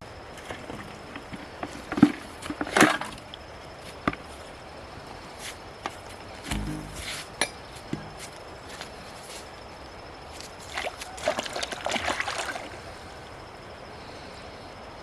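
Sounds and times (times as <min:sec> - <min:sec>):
water splashing and sloshing: 0:10.7 - 0:12.8.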